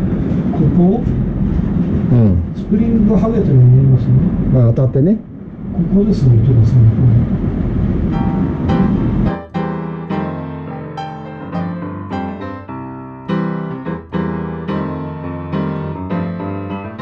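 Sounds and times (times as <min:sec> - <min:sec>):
piano music: 0:08.0 - 0:17.0.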